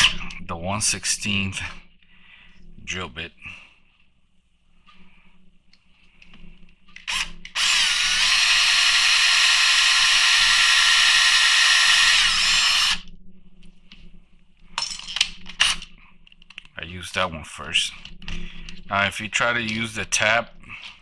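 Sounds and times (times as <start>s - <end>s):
power drill whining: 7.0s - 13.0s.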